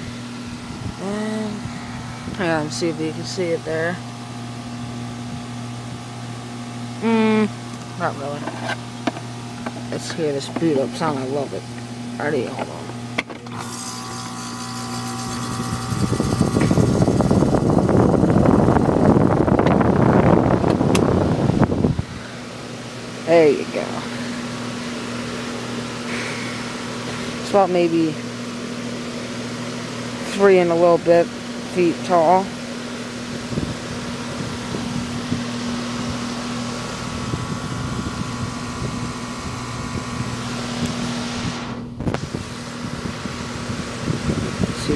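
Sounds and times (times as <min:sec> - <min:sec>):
condenser fan rushing air: 0:00.0 - 0:44.9
low electrical hum: 0:00.0 - 0:44.9.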